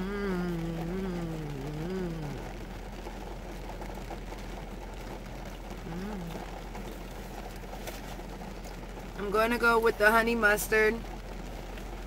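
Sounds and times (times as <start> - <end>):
person humming: 0.0 - 2.5, 5.9 - 6.4
rain pattering on car roof: 0.0 - 12.0.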